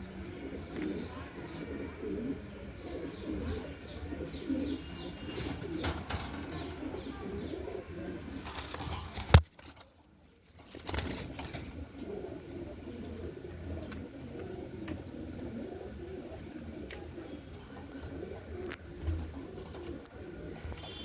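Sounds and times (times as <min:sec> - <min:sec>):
pigeons cooing: 0:00.0 - 0:09.4, 0:10.8 - 0:21.0.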